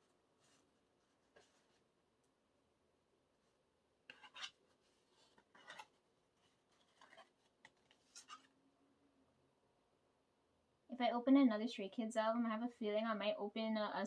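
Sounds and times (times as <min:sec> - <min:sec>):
cardboard rubbing and scraping: 0:04.1 - 0:08.5.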